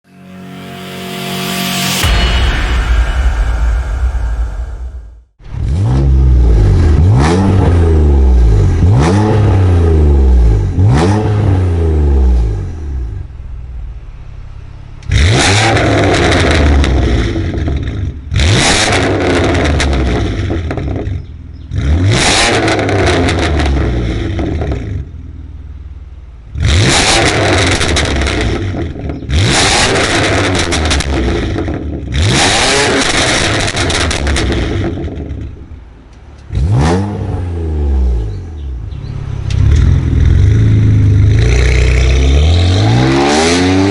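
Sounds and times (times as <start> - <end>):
car engine revving: 0.4 - 43.9
exhaust pops and crackles: 32.9 - 36.5.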